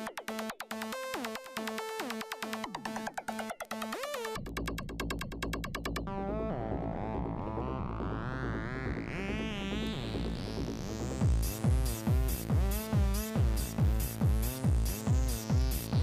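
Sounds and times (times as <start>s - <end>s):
deep bass: 4.4s - 16.0s.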